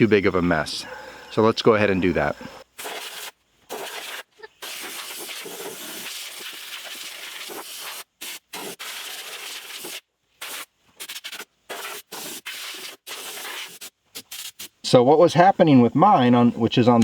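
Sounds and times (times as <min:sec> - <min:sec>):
compressed air blow gun hissing: 0:02.4 - 0:14.9.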